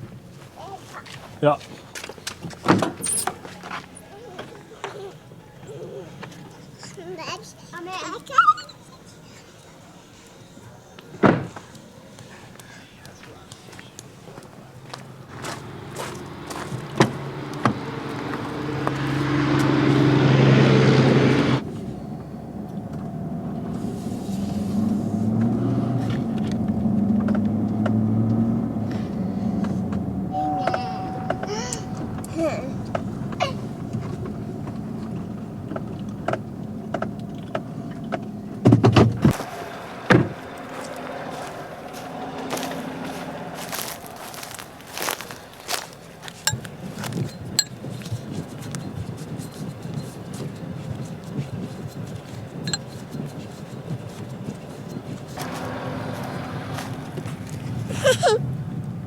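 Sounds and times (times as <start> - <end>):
pickup truck engine accelerating: 12.5 - 59.0.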